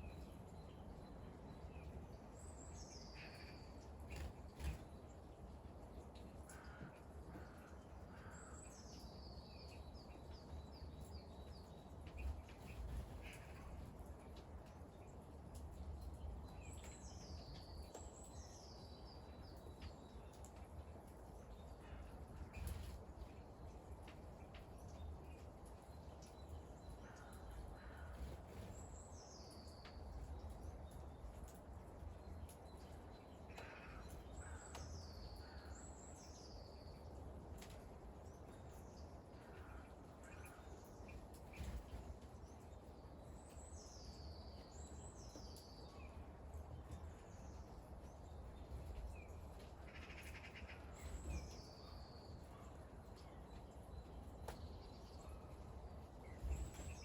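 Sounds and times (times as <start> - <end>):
light rain falling: 0.0 - 57.0.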